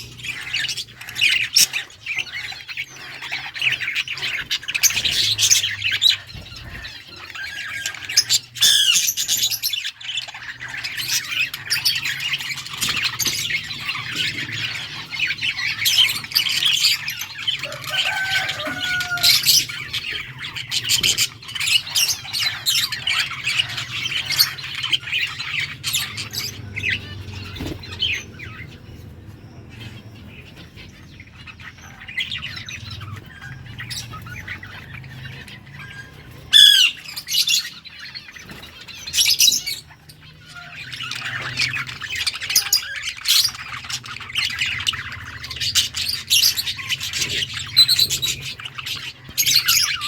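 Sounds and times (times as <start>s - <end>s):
budgerigars chirping and chattering: 0.0s - 50.0s.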